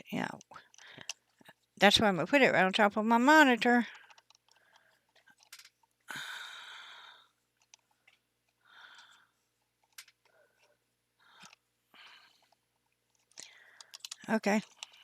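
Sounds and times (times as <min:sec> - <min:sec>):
person breathing out: 0:06.1 - 0:07.3.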